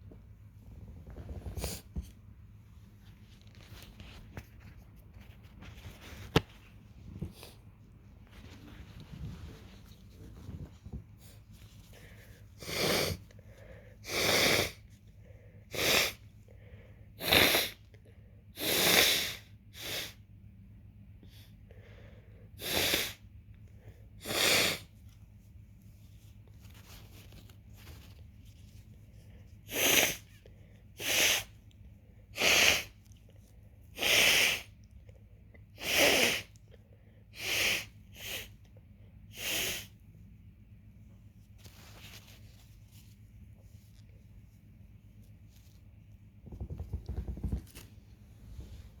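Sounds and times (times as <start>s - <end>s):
person sniffing: 12.0s - 14.9s, 15.7s - 16.2s, 17.2s - 17.8s, 18.6s - 20.2s, 22.6s - 23.2s, 24.2s - 24.9s, 29.6s - 30.4s, 31.0s - 31.6s, 32.3s - 33.0s, 33.9s - 34.8s, 35.8s - 36.6s, 37.3s - 38.6s, 39.3s - 40.0s
short sharp sniffs: 15.7s - 16.2s, 31.0s - 31.5s, 39.3s - 40.0s.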